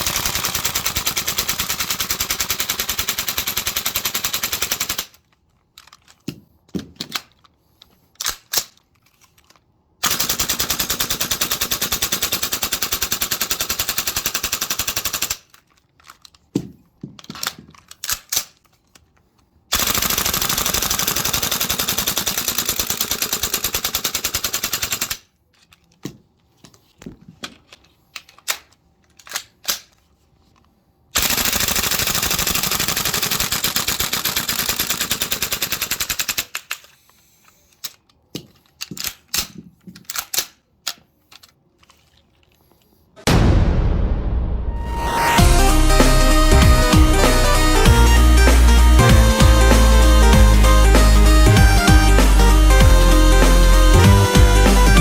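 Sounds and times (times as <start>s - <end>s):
airsoft rifle full-auto firing: 0.0s - 5.2s, 10.0s - 15.5s, 19.7s - 25.2s, 31.2s - 36.8s
clicks and clatters: 5.0s - 9.7s, 15.3s - 19.5s.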